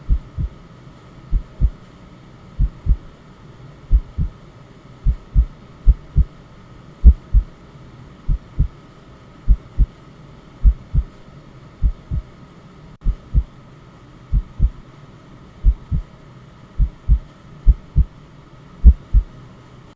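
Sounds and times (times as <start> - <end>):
heartbeat thumping: 0.0 - 0.6, 1.3 - 1.8, 2.6 - 3.1, 3.9 - 4.4, 5.0 - 6.3, 7.0 - 7.5, 8.3 - 8.7, 9.5 - 9.9, 10.6 - 11.2, 11.8 - 12.3, 13.0 - 13.5, 14.3 - 14.8, 15.6 - 16.1, 16.8 - 18.1, 18.8 - 19.3
faint background hiss and hum: 0.0 - 19.9.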